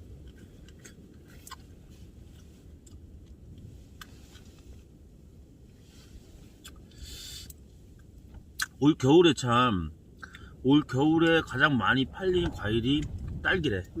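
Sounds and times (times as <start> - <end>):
short rustle: 5.6 - 7.5
strong wind rumbling: 10.5 - 14.0.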